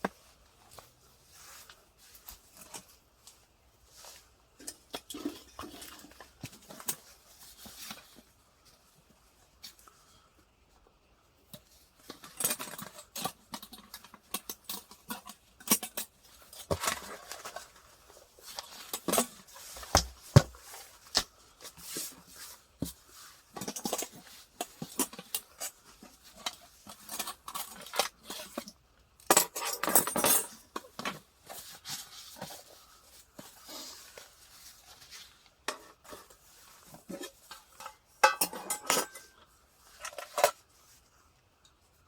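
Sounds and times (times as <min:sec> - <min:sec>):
rustling and rattling: 0:11.6 - 0:41.1.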